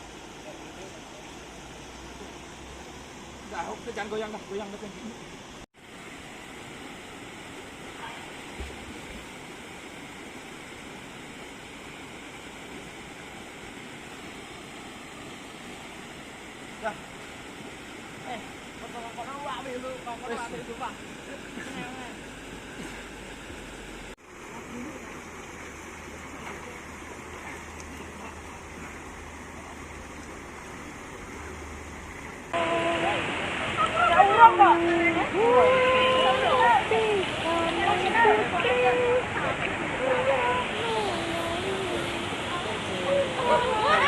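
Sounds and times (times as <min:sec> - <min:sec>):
flowing spring water: 0:00.0 - 0:44.0.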